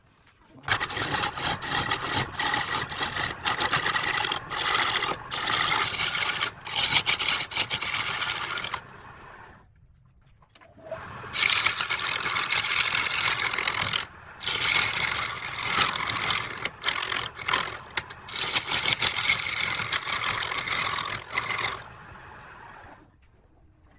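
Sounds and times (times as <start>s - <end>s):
lathe tool scraping wood: 0.7s - 9.6s, 11.2s - 22.9s.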